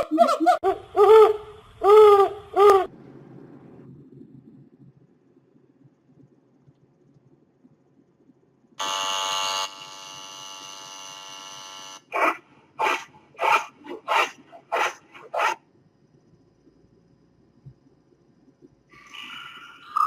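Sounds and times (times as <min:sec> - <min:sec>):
electric hair trimmer buzzing: 0:08.8 - 0:12.0.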